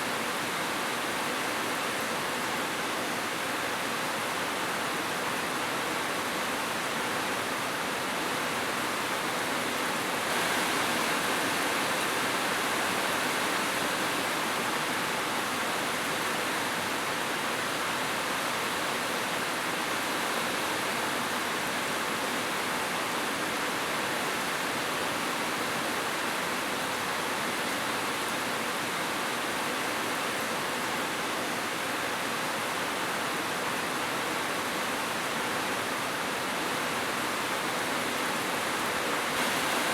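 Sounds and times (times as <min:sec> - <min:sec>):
heavy rain falling: 0:09.7 - 0:17.2, 0:36.7 - 0:39.9.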